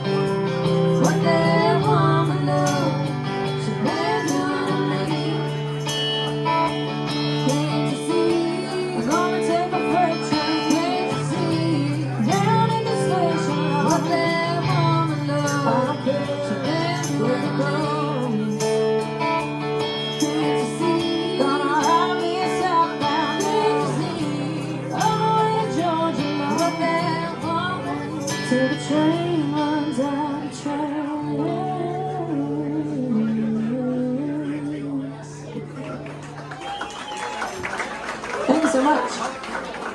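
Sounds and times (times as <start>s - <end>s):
live instrumental band music: 0.0s - 28.8s.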